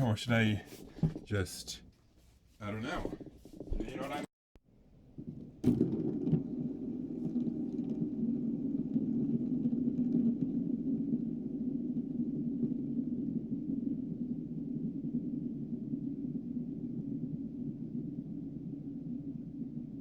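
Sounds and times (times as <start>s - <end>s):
steady low rumble: 5.0s - 20.0s.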